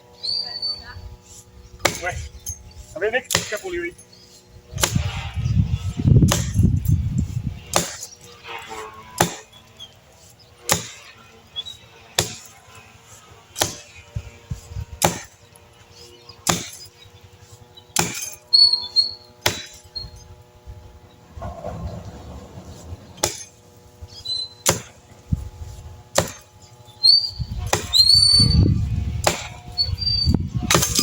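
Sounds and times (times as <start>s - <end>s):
wood being chopped: 1.8s - 2.2s, 3.3s - 3.6s, 4.7s - 5.2s, 6.2s - 6.7s, 7.7s - 8.1s, 9.2s - 9.5s, 10.7s - 11.0s, 12.2s - 12.5s, 13.6s - 13.9s, 15.0s - 15.4s, 16.4s - 16.9s, 18.0s - 18.4s, 19.4s - 19.9s, 23.2s - 23.5s, 24.6s - 25.1s, 26.1s - 26.5s, 27.6s - 28.1s, 29.2s - 29.6s, 30.6s - 31.0s.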